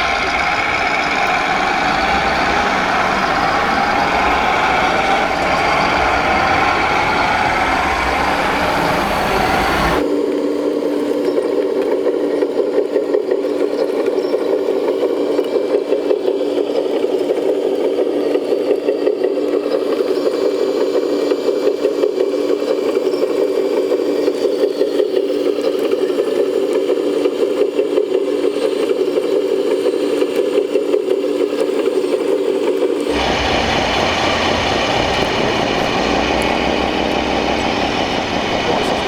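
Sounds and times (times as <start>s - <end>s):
low fluttering hum: 0.0s - 10.0s, 33.1s - 39.0s
toy machines engine-like sound: 0.0s - 10.1s, 33.1s - 39.0s.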